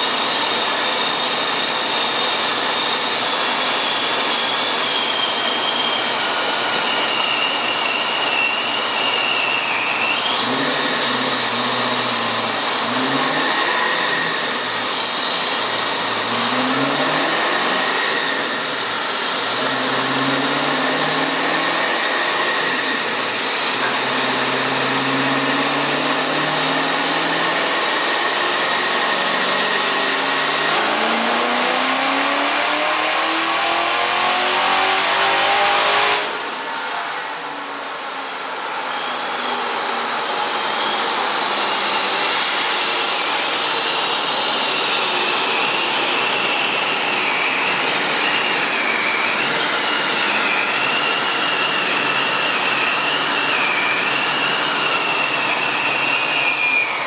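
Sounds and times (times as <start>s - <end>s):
car engine revving: 0.1s - 56.6s.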